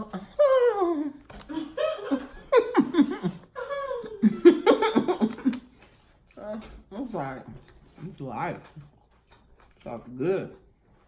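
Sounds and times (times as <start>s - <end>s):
person laughing: 1.5s - 5.7s.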